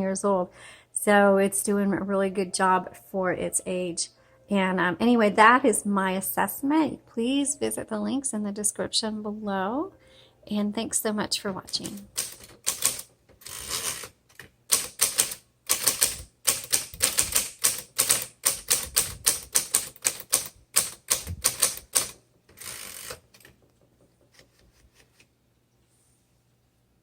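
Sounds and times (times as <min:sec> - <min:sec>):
typewriter key strikes: 0:11.7 - 0:14.1, 0:14.7 - 0:23.6
longer softer typewriter sound: 0:11.7 - 0:23.6.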